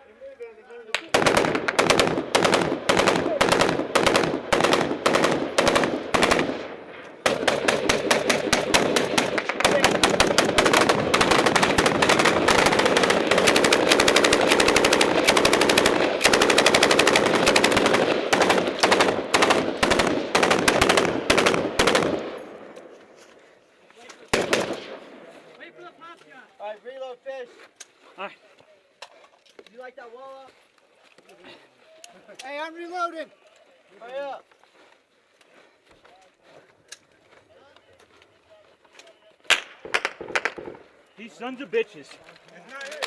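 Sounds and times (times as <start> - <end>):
automatic weapon firing: 1.0 - 22.5, 24.3 - 25.1, 39.5 - 40.9.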